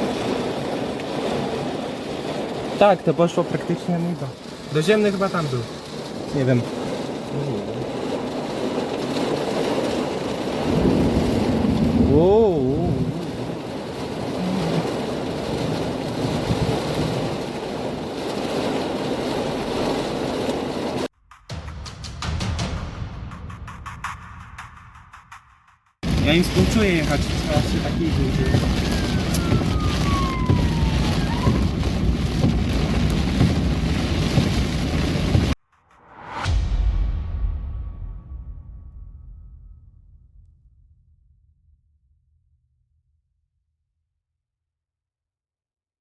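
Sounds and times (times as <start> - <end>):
heavy rain hiss: 0.0 - 21.1, 26.0 - 35.6
deep thunder rumble: 0.0 - 25.3, 26.0 - 35.6
wind rushing on microphone: 5.4 - 21.1, 26.0 - 35.6.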